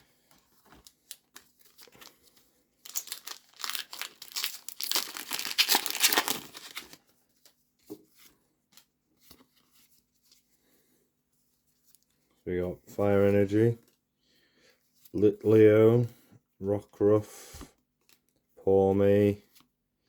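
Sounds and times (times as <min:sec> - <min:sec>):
foil wrapper tearing and crinkling: 0:02.8 - 0:07.0.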